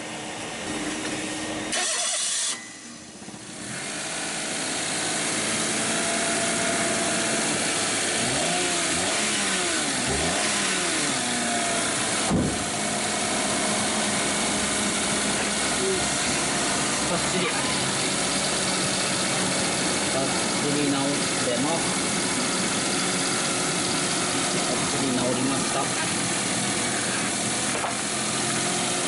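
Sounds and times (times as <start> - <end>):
car engine starting and revving: 1.6 - 2.6, 3.4 - 29.0.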